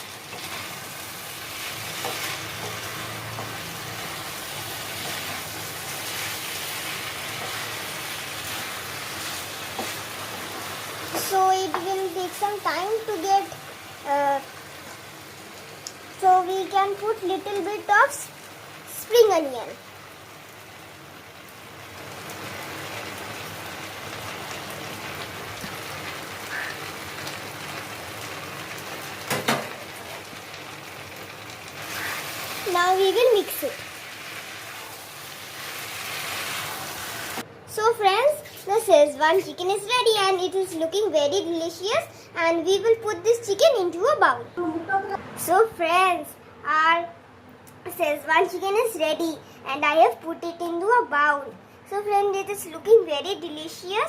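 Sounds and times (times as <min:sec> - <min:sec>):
chicken sizzling in a frying pan: 0:00.0 - 0:37.5.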